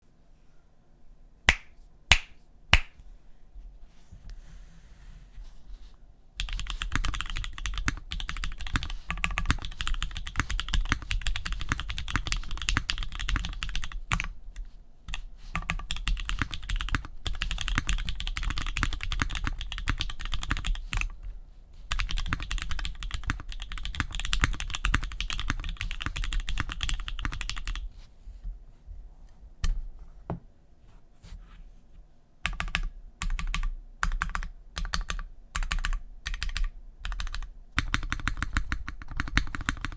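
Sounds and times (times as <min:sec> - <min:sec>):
mechanical keyboard typing: 0:06.4 - 0:14.3, 0:15.1 - 0:21.1, 0:21.9 - 0:27.8, 0:32.5 - 0:39.9.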